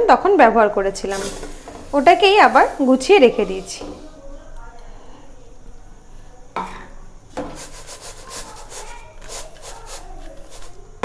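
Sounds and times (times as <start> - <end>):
salt grains rasping in metal pot: 1.0 - 4.1, 7.4 - 11.0.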